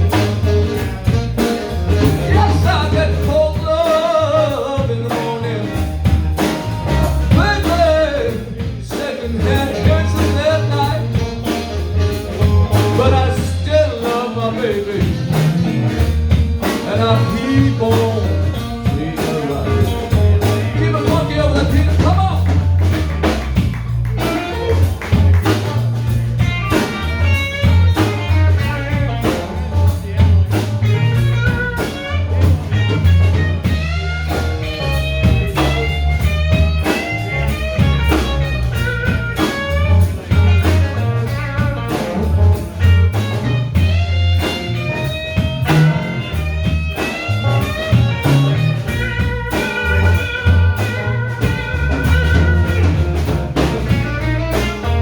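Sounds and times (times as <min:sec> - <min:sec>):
bass line: 0:00.0 - 0:55.0
drums: 0:00.0 - 0:55.0
lead guitar solo: 0:20.1 - 0:55.0.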